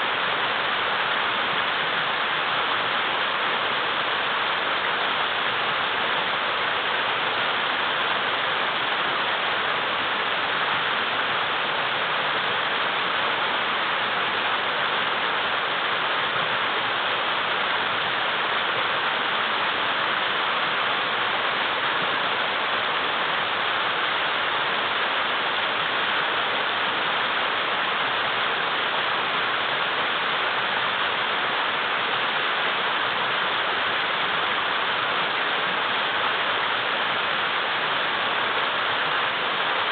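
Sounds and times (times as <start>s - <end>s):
river rushing over boulders: 0.0s - 39.9s.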